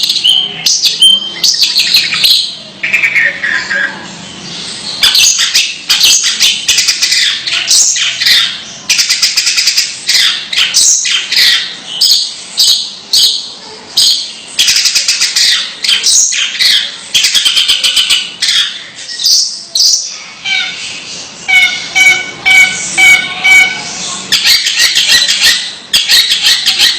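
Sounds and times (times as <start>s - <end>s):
shrike harsh chattering call: 0.0s - 26.9s.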